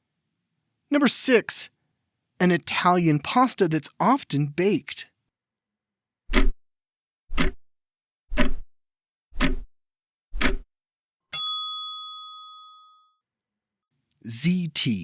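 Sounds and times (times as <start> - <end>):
clock ticks: 6.3 - 6.6, 7.3 - 7.6, 8.3 - 8.7, 9.4 - 9.7, 10.4 - 10.6
bell ding: 11.4 - 13.2.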